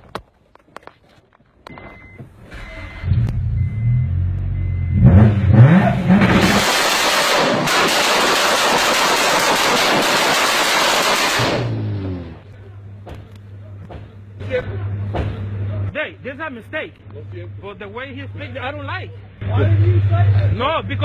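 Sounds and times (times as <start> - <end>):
car engine revving and crackling: 2.3 - 13.5.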